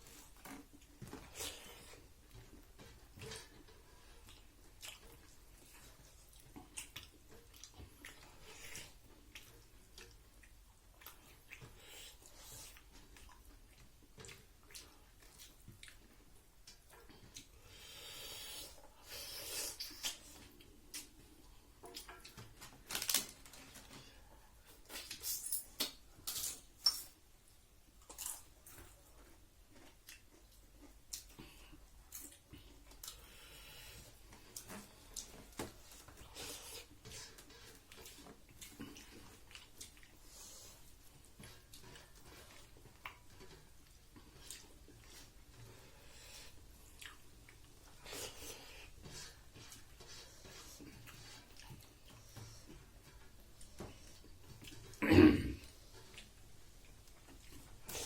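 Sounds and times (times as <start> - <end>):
person chewing food: 0.0 - 58.0.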